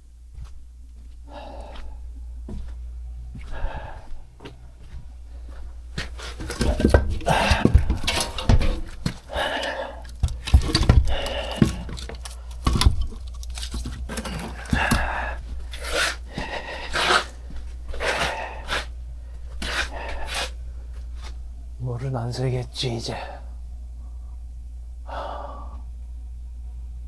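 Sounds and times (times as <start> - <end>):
steady low hum: 0.0 - 27.0
scraping and rustling: 4.5 - 21.5.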